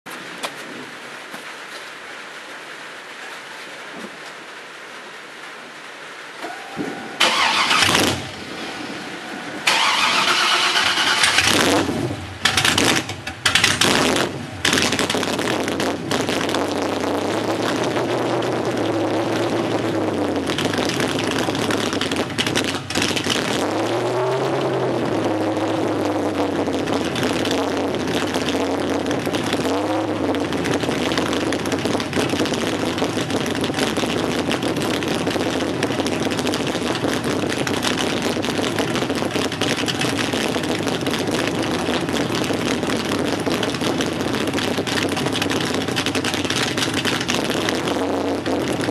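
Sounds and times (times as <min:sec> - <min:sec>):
car engine idling and revving: 0:06.4 - 0:48.9.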